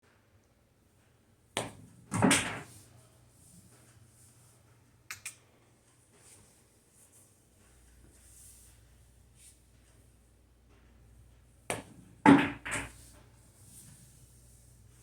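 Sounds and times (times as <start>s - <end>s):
billiard balls knocking: 1.6s - 2.8s, 11.7s - 13.1s.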